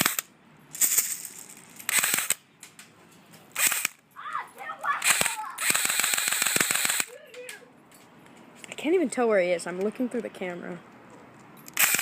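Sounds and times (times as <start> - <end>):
airsoft gun full-auto bursts: 1.9 - 2.4, 3.6 - 4.0, 5.0 - 7.1, 11.8 - 12.0.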